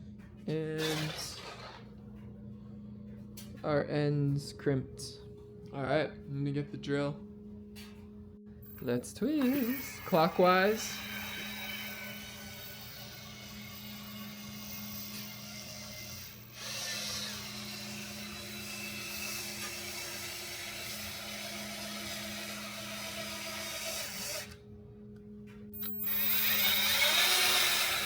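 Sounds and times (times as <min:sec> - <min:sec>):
power drill motor running: 0:00.8 - 0:01.9, 0:09.3 - 0:24.6, 0:25.8 - 0:28.0.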